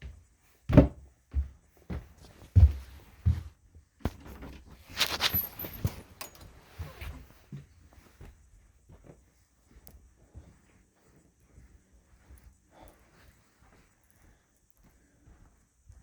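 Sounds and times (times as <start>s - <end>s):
dog knocks and scuffling rustles: 4.1s - 7.7s.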